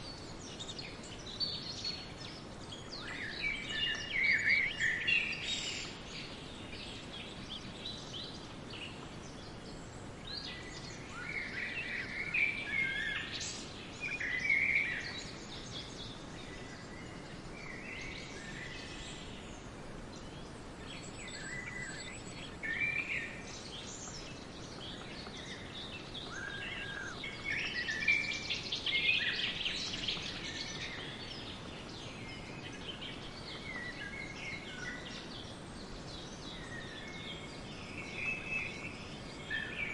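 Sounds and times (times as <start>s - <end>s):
soft background hiss: 0.0s - 39.9s
songbirds singing and chirping: 0.0s - 39.9s.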